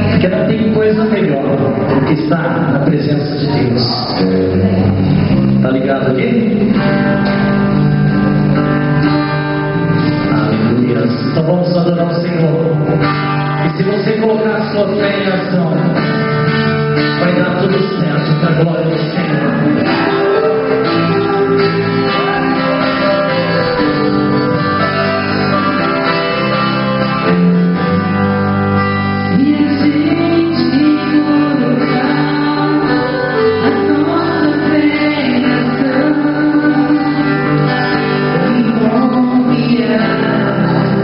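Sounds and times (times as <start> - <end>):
acoustic guitar chords: 0.0 - 41.0
person singing: 17.2 - 28.1, 29.0 - 41.0.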